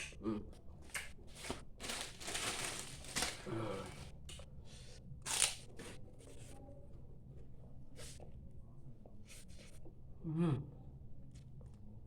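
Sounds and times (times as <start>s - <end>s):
person humming: 10.2s - 10.8s.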